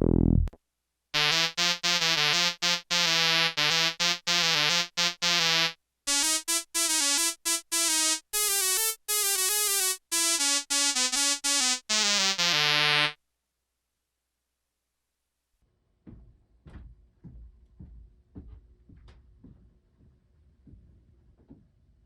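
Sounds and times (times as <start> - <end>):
buzzy synthesizer notes: 0.0 - 0.6, 1.2 - 13.2.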